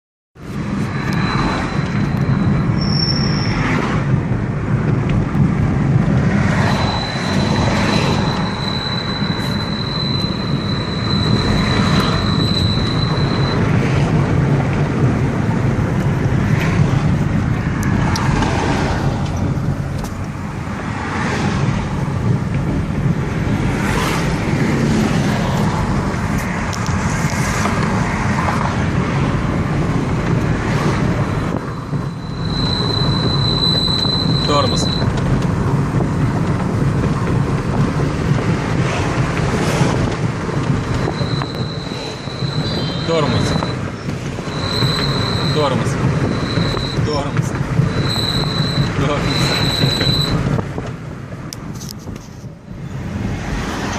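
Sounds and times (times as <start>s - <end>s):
road and engine noise: 0.4s - 53.9s
thin high brake whistle: 1.0s - 3.8s, 6.6s - 13.8s, 31.4s - 35.2s, 40.8s - 50.4s.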